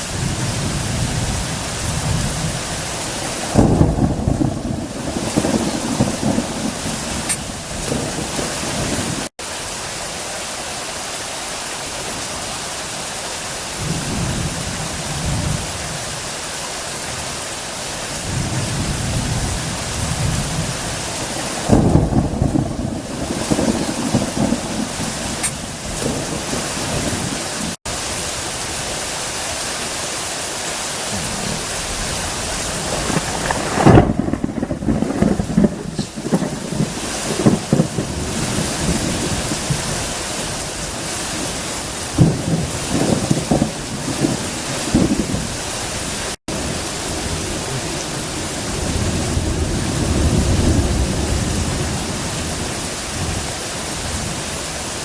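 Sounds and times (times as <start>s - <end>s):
loud thunderclaps: 0.0s - 9.3s, 18.2s - 27.8s, 31.2s - 54.4s
thunder rumbling: 0.0s - 9.3s, 18.1s - 28.0s, 31.1s - 55.0s
heavy rain falling: 0.0s - 55.0s.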